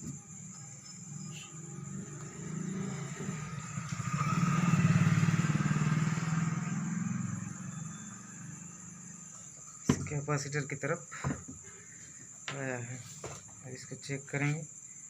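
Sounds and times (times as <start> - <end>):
vehicle engine passing by: 1.2 - 9.5.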